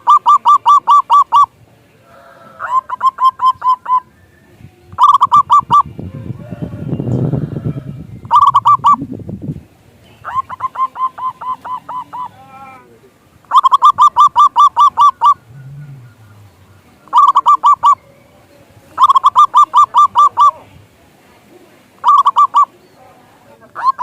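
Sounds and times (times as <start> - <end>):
dove calling in staccato notes: 0.0 - 4.1, 4.9 - 9.1, 10.1 - 12.5, 13.4 - 18.1, 18.9 - 20.7, 22.0 - 22.8, 23.7 - 24.0.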